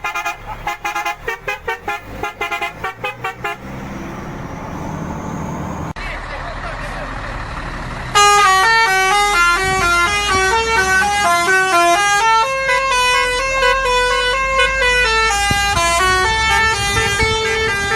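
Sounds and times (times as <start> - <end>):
air horn playing a tune: 0.0 - 4.2
truck engine humming: 0.0 - 6.0.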